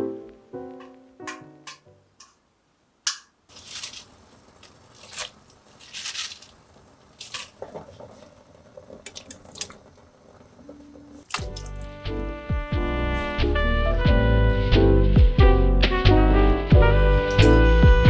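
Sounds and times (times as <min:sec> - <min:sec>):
music: 0:00.0 - 0:01.7, 0:11.4 - 0:18.0
soft handling noise: 0:03.1 - 0:11.9.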